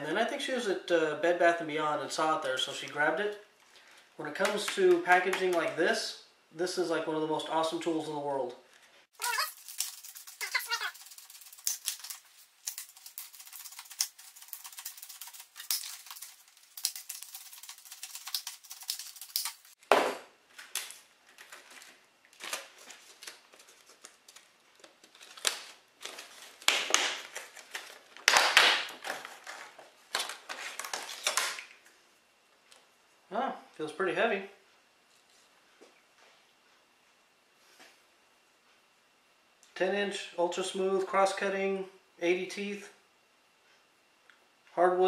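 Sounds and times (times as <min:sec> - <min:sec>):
stiff plastic crackling: 0:09.2 - 0:19.8, 0:20.6 - 0:31.8.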